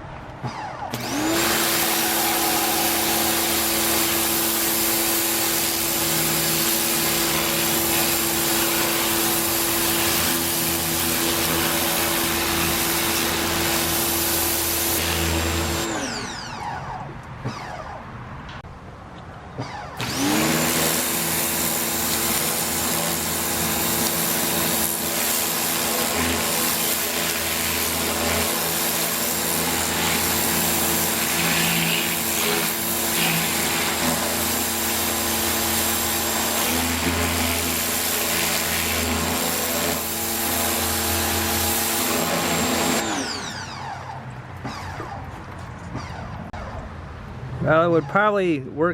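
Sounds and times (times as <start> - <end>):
pressure washer motor humming: 0.3 - 18.1, 19.6 - 46.8
water jet hissing: 1.2 - 15.0.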